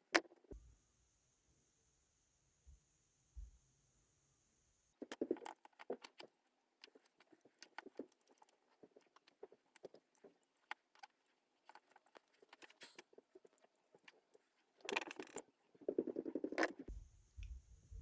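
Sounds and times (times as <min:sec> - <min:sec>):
clicks of small parts and tools: 0:05.0 - 0:16.9.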